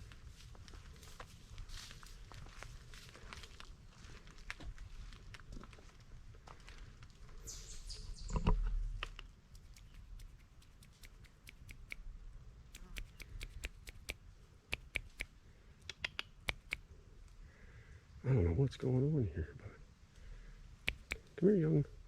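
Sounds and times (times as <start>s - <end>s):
footsteps crunching on trail: 0.0s - 7.4s.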